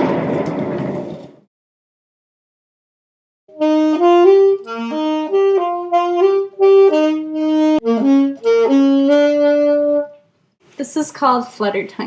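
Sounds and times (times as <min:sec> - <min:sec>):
alto saxophone melody: 0:03.5 - 0:10.3.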